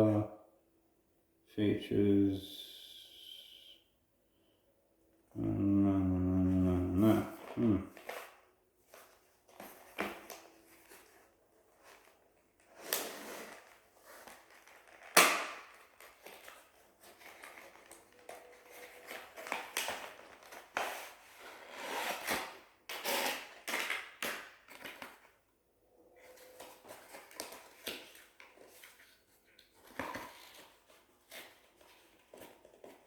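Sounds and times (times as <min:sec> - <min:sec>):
packaging rustling and crinkling: 0:07.3 - 0:25.4, 0:26.2 - 0:33.0
packaging snap: 0:14.6 - 0:16.5.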